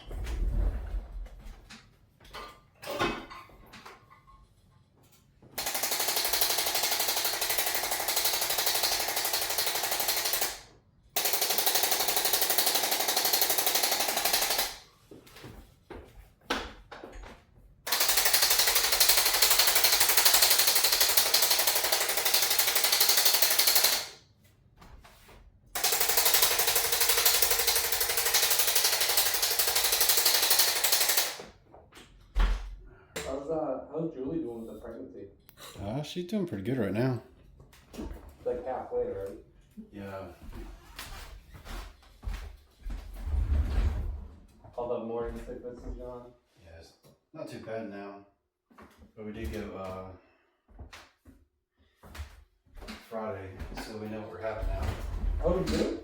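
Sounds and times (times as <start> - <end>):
percussion massager rattling: 5.6 - 14.8, 17.9 - 24.2, 25.8 - 31.6.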